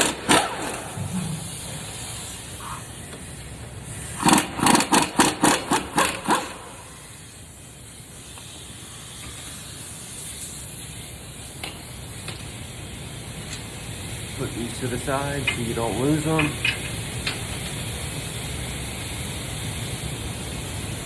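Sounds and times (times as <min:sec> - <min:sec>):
wrench rattling pulses: 0:00.0 - 0:02.2, 0:04.1 - 0:06.8.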